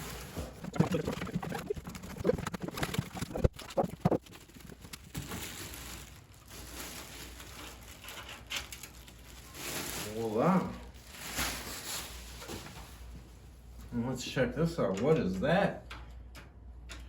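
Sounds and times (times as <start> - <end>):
packing material rustling: 0.0 - 13.2.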